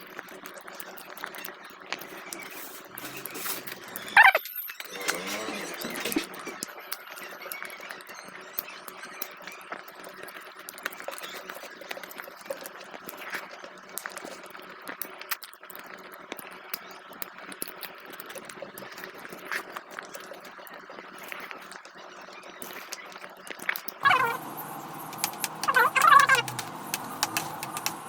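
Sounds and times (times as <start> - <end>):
wet eating sounds: 24.0 - 28.0.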